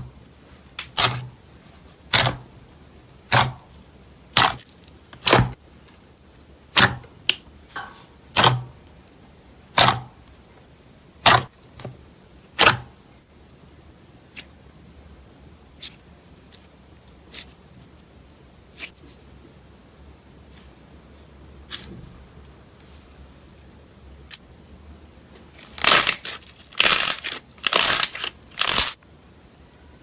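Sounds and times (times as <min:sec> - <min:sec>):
slime popping: 0:25.8 - 0:29.0.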